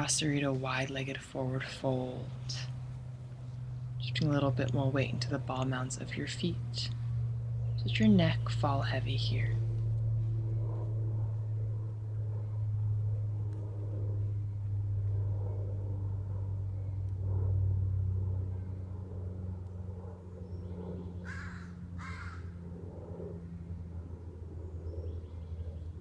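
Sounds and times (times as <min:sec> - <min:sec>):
steady low hum: 0:00.0 - 0:26.0.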